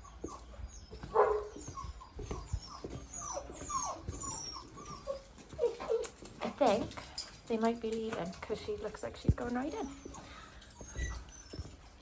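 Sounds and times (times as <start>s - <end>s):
puppies whining and yelping: 0.0s - 7.4s, 9.2s - 12.0s.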